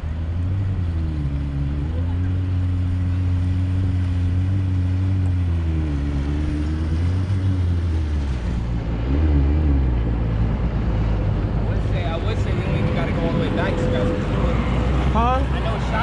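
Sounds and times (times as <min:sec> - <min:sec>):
jet ski engine running: 0:00.0 - 0:16.0
water noise: 0:00.0 - 0:16.0
wind: 0:00.0 - 0:16.0.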